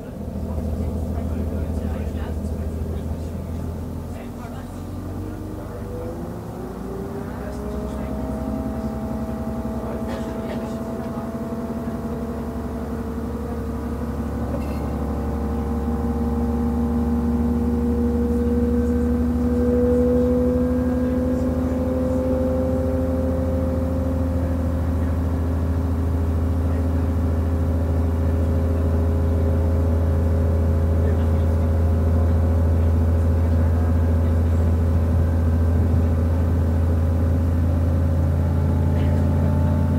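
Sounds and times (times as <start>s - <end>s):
diesel engine under load: 0.0s - 39.9s
rising whining tones: 4.8s - 26.4s.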